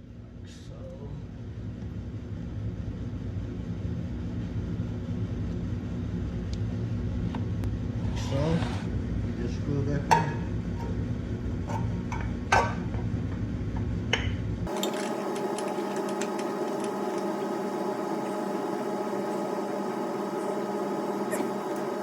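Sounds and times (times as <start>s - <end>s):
steady hum: 14.5s - 22.0s.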